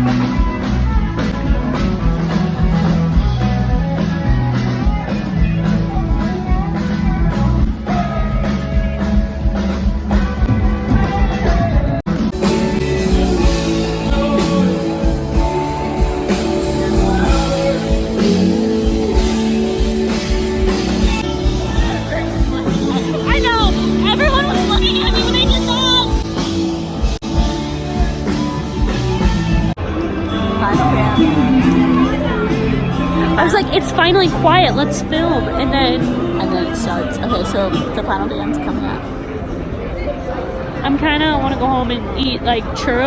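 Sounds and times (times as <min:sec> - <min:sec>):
steady drum beat: 0:00.0 - 0:29.8
electric guitar: 0:00.0 - 0:38.5
person singing: 0:10.6 - 0:26.4.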